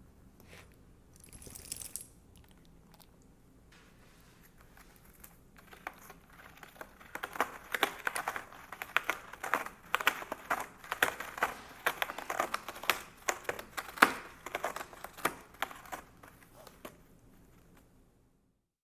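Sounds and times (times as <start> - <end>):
cat clawing scratching post: 4.4 - 17.8.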